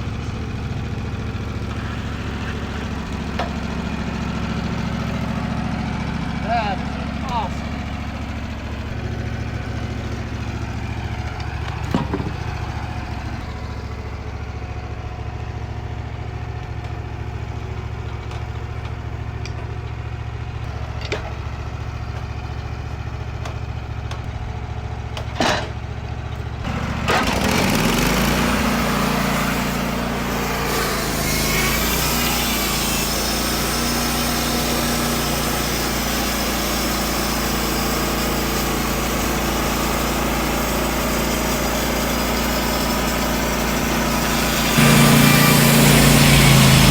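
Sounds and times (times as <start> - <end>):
band saw cutting log: 0.0 - 13.8, 26.6 - 46.9
sawmill engine idling: 0.0 - 46.9.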